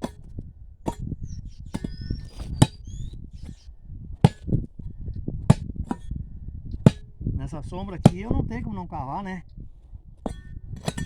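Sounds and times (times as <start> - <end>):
hoe chopping into ground: 0.0 - 8.8, 10.2 - 11.0.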